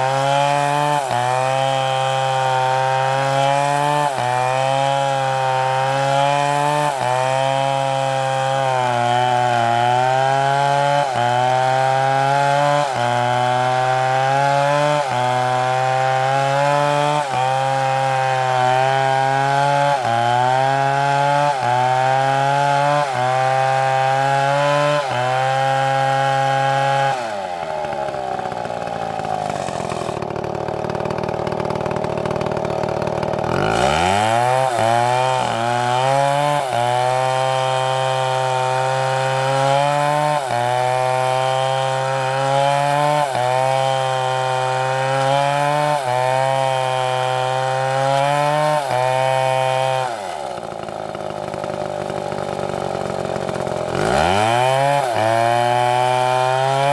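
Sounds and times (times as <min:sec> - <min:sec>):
chainsaw cutting a log: 0:00.0 - 0:56.9.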